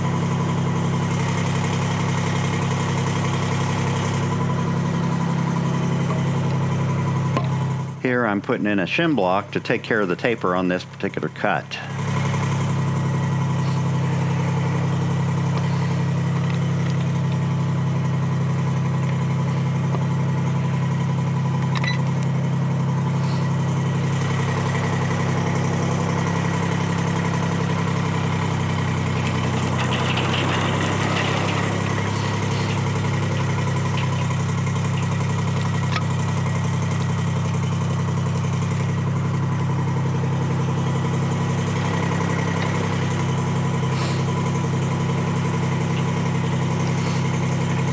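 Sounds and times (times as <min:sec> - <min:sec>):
diesel engine running: 0:00.0 - 0:47.9
short rough noise: 0:24.2 - 0:36.3.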